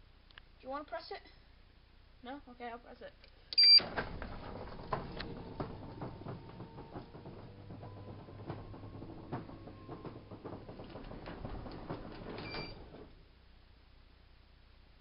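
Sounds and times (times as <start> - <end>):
garage door motor whine: 3.6 - 13.3
door rattling and clicking: 3.8 - 13.2.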